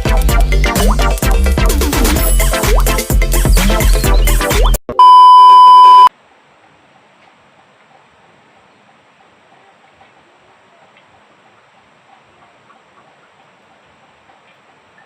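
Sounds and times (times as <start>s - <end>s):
loud electronic beep: 5.0s - 6.1s.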